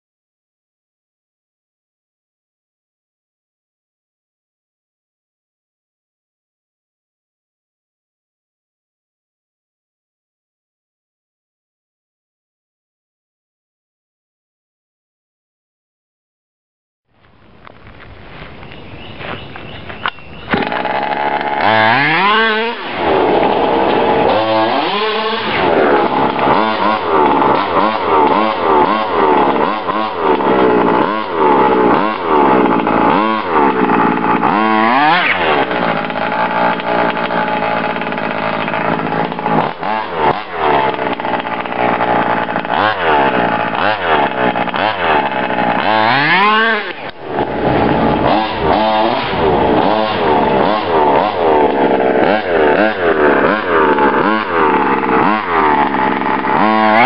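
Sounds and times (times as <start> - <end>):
two-stroke engine revving: 20.4 - 57.0.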